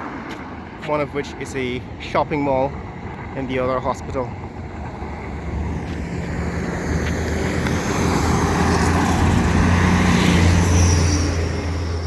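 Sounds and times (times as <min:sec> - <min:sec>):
vehicle engine and road noise: 0:00.0 - 0:12.0.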